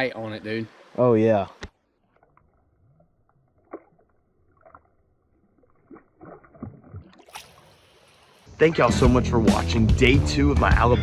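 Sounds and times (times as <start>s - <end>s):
water splashes: 0.0s - 8.9s
muffled water sounds: 0.7s - 9.5s.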